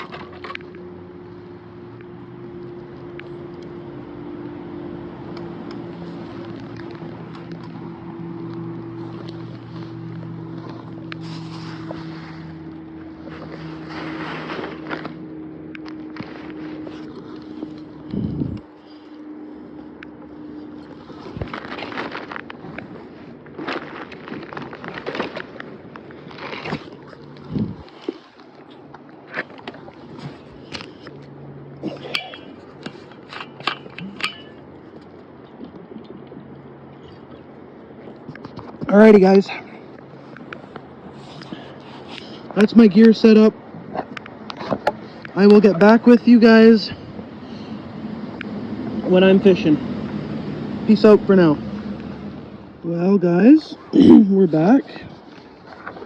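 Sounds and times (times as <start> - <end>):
engine humming steadily: 0.0 - 56.0
wind noise: 18.1 - 18.7, 27.4 - 27.9.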